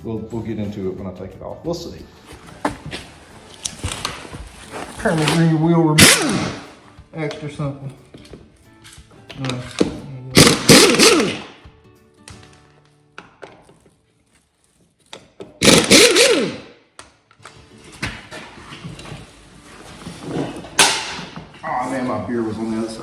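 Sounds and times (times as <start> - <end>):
power tool motor bursts: 6.0 - 6.7, 10.4 - 11.5, 15.6 - 16.7.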